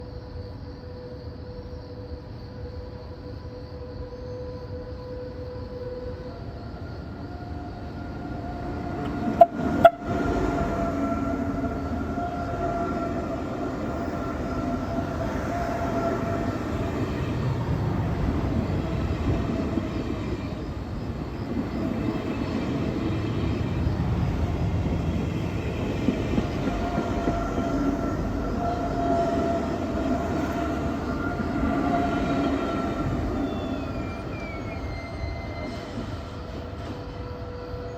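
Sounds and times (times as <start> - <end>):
electric train whine: 0.0 - 37.9
train wheels rumbling: 6.1 - 37.9
train horn blasts: 8.5 - 17.0, 26.4 - 35.7.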